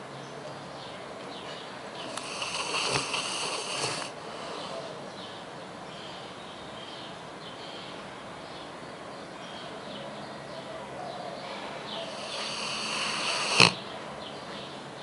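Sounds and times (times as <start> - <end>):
dog snoring: 2.0 - 4.8, 12.0 - 13.8.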